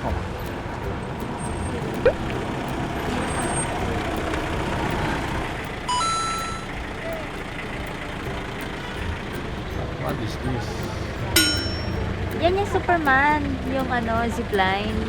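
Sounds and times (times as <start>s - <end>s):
vehicle-like hum: 0.0s - 15.0s
electronic beep rising in pitch: 5.9s - 6.8s.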